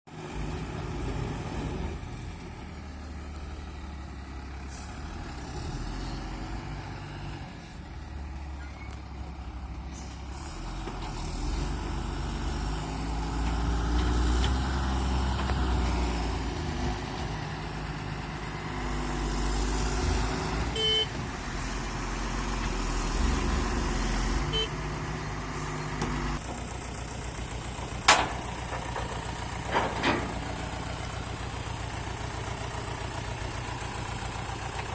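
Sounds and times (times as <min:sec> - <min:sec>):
heavy diesel engines under load: 0:00.1 - 0:34.9
short metal clanks: 0:28.1 - 0:30.6.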